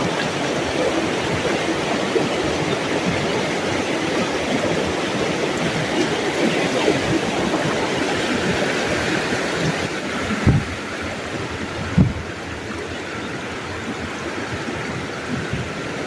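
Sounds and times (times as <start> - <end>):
river water rushing: 0.0 - 16.0
low thumps: 10.3 - 11.0, 11.8 - 12.4.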